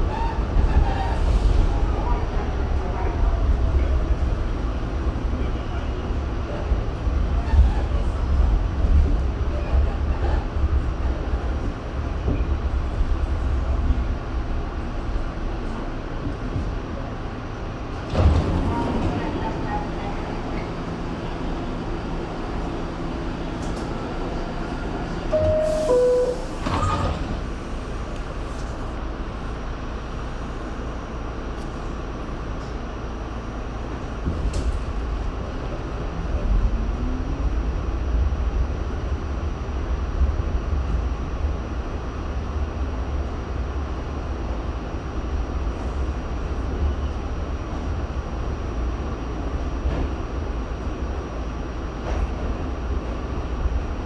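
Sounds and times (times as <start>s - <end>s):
low rumble of train wheels: 0.0s - 54.0s
subway doors closing: 0.0s - 54.0s
two-note falling door chime: 25.4s - 26.7s.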